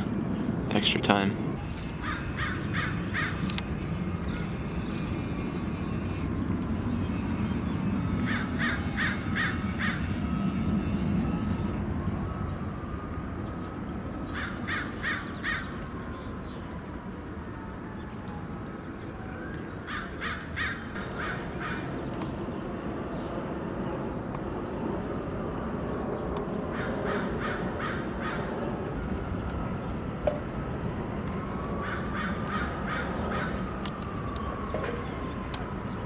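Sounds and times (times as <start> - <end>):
crow cawing: 2.0 - 3.4, 8.3 - 10.0, 14.4 - 15.7, 19.9 - 21.9, 26.7 - 28.5, 31.8 - 33.6.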